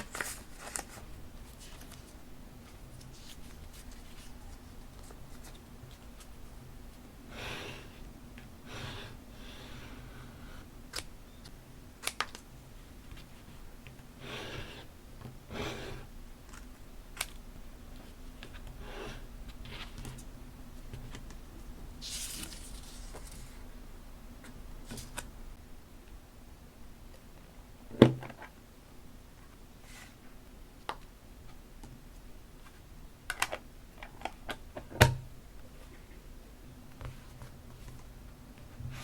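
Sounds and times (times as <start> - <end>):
paper rustling and sliding: 0.0 - 2.2, 22.0 - 23.6.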